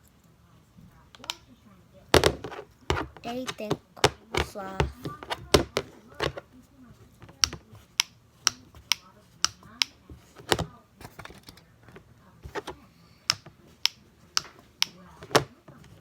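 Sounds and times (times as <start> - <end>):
tapping clicks on hard object: 7.3 - 10.7.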